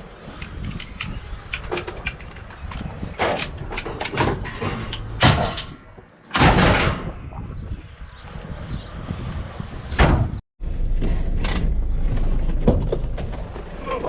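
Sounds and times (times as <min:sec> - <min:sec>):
scrap metal knocks and clatters: 0:00.4 - 0:07.1
loud metal bangs: 0:03.1 - 0:07.2.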